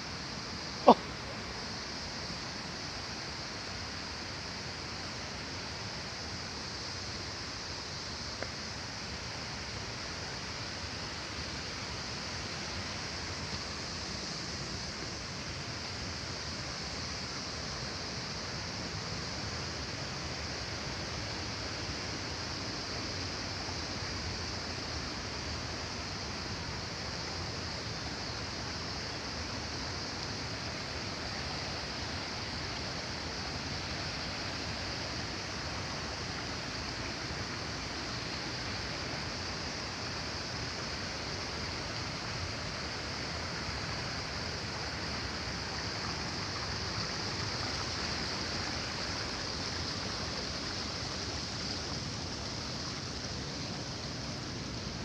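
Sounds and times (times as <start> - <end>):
waterfall rushing: 28.4 - 55.0.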